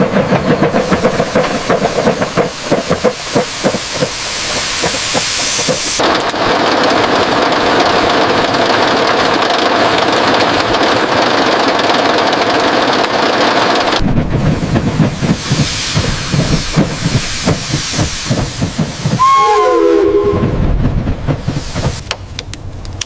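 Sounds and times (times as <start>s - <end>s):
steam hissing: 0.0s - 8.9s, 13.6s - 22.4s
rapid low locomotive pulses: 14.0s - 22.1s
falling whistle-like tone: 19.2s - 20.6s.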